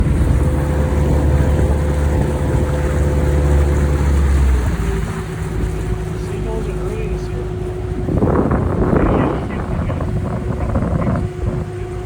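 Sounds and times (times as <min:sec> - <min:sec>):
boat motor humming: 0:00.0 - 0:12.0
steady whine: 0:06.4 - 0:12.0.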